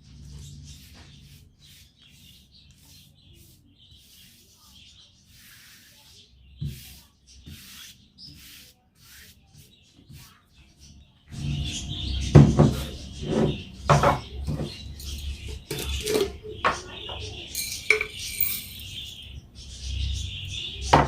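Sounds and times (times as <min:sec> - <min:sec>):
household items clinking and knocking: 0:13.4 - 0:19.1.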